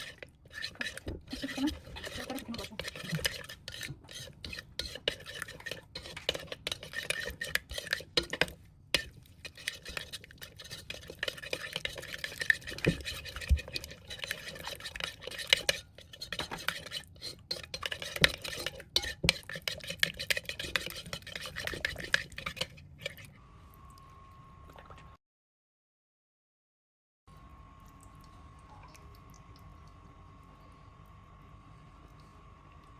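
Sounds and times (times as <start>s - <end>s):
spoon stirring and scraping pot: 0.0s - 23.4s.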